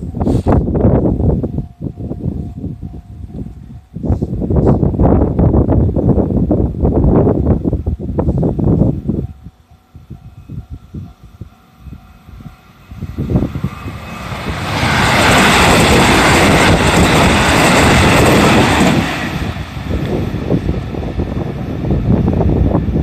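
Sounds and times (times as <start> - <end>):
wind buffeting microphone: 0.0 - 23.0
train wheels on rails: 8.2 - 23.0.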